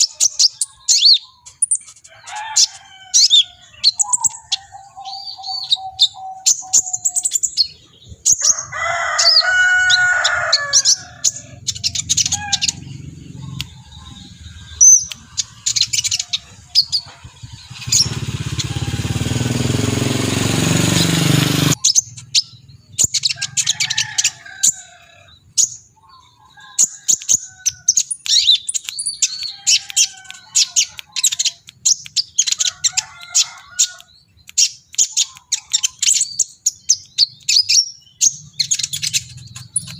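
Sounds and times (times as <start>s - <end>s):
sunbird singing high chirps: 0.0s - 20.0s, 20.9s - 39.9s
loud rushing noise: 17.3s - 21.8s.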